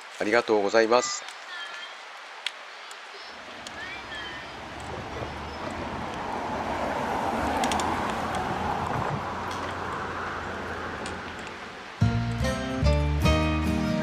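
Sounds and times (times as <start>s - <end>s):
road noise rushing: 2.1s - 14.0s
car engine rumble: 3.4s - 13.9s.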